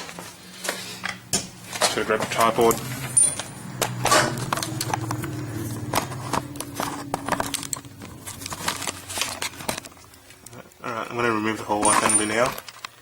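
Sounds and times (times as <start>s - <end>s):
low hum: 1.0s - 10.7s.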